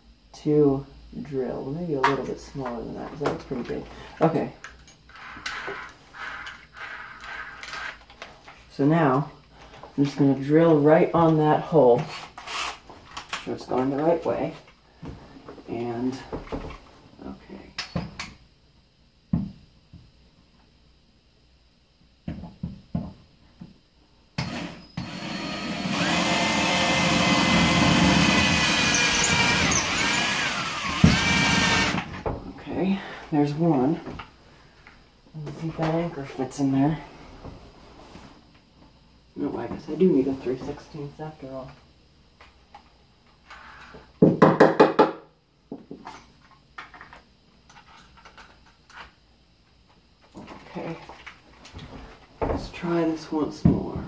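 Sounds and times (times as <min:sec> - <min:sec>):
electric drill whining: 0:24.4 - 0:32.1.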